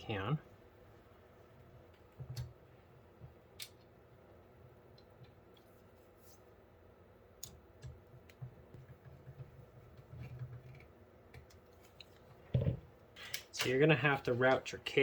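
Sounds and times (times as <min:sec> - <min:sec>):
computer fans clicking and knocking: 0:01.8 - 0:04.0, 0:07.4 - 0:14.7.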